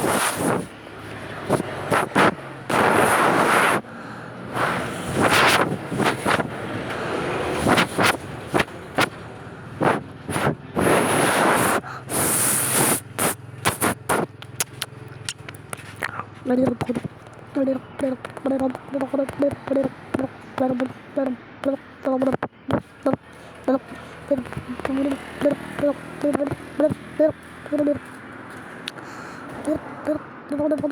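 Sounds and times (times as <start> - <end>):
wind buffeting microphone: 4.5 - 21.1
microphone overload pops: 7.6 - 9.2, 9.8 - 16.0.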